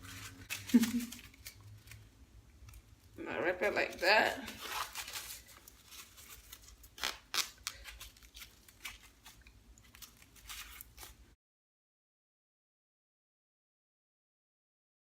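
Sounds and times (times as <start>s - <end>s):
fabric wrap rustling and crinkling: 0.0s - 11.4s.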